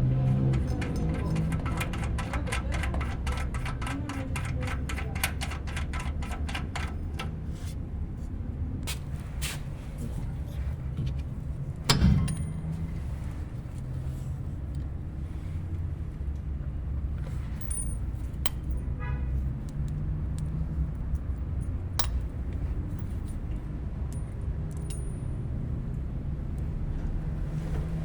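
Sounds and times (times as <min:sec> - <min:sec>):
car engine running: 0:00.0 - 0:07.4
sharp clicks or knocks: 0:00.3 - 0:07.4.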